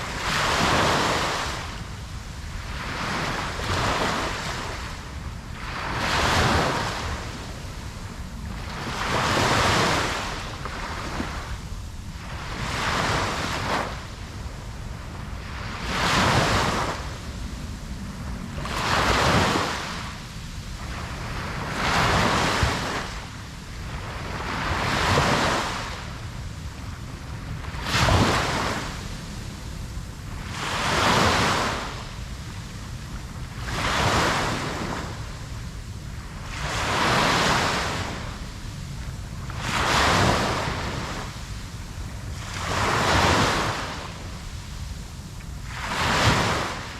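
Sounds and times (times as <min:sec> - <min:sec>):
waves breaking on shore: 0:00.0 - 0:46.9
low surf rumble: 0:06.8 - 0:12.7, 0:13.9 - 0:21.9.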